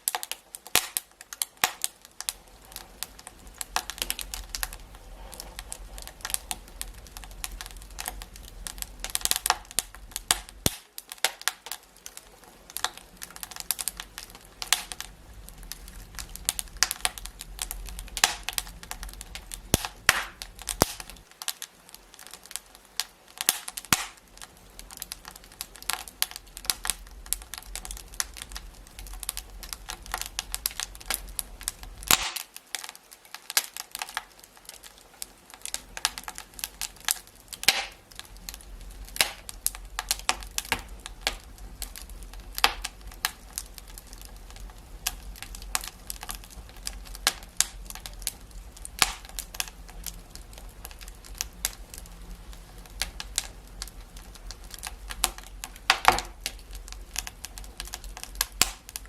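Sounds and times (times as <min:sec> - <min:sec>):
low steady hiss: 0:00.0 - 0:59.0
wood fire crackling: 0:00.0 - 0:59.0.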